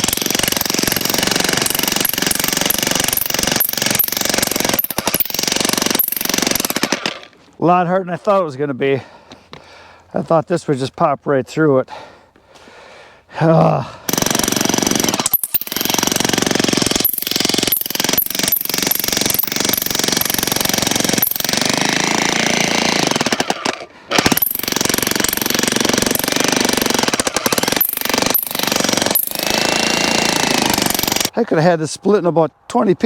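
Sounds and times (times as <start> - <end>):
jackhammer hammering into wood: 0.0 - 7.5, 14.1 - 31.3.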